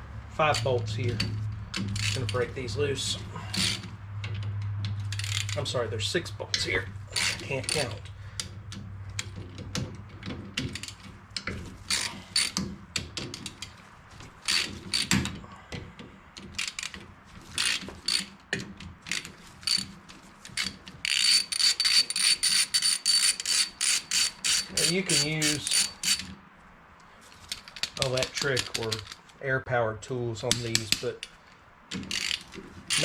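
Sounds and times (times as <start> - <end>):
ratchet wrench clicking: 0.5 - 2.5, 3.5 - 5.8, 6.5 - 9.8, 10.6 - 13.7, 14.4 - 15.4, 16.4 - 17.0, 17.6 - 26.4, 30.6 - 33.0.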